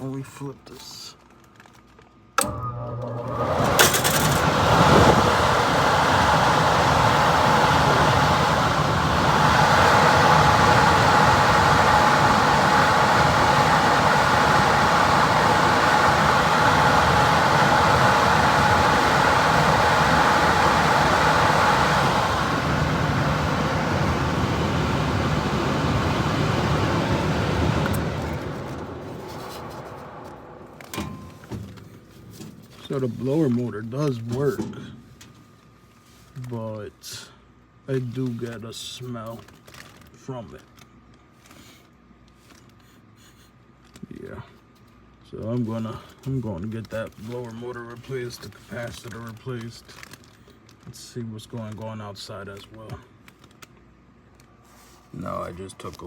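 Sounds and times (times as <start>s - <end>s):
blower motor rushing air: 2.4s - 35.0s
motor hum: 2.4s - 35.4s.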